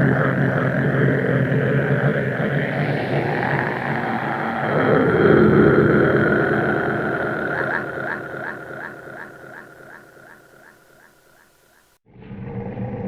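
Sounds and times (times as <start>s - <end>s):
steady high tone: 0.0s - 10.7s
noisy rumble: 0.0s - 11.4s.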